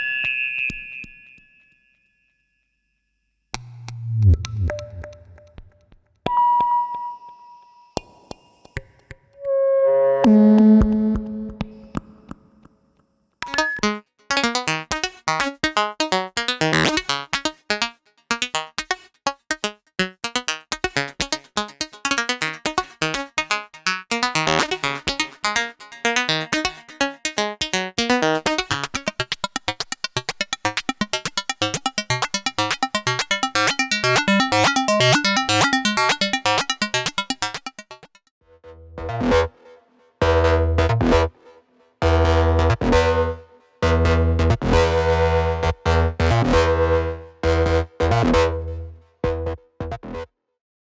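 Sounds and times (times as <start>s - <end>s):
deep synthesizer tones with bass: 3.6s - 5.7s, 32.6s - 37.8s, 38.5s - 39.6s, 40.2s - 41.3s, 42.0s - 50.3s
synthesizer plucked notes: 3.6s - 5.7s, 13.4s - 22.7s, 24.1s - 38.1s, 42.0s - 50.1s.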